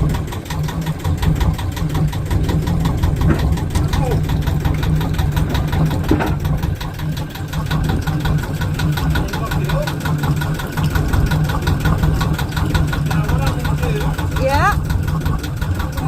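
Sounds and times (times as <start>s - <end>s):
diesel engine clattering: 0.0s - 16.0s.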